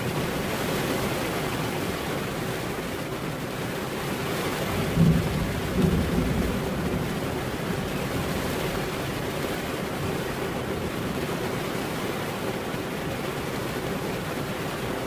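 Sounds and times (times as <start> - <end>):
steady rain falling: 0.0 - 15.0
thunder rumble: 4.6 - 11.0.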